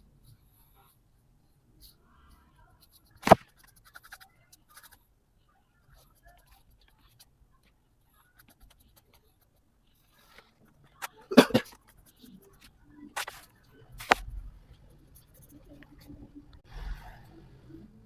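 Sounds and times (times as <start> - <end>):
pencil scratching on paper: 2.7 - 5.1, 8.1 - 14.2, 15.1 - 16.1.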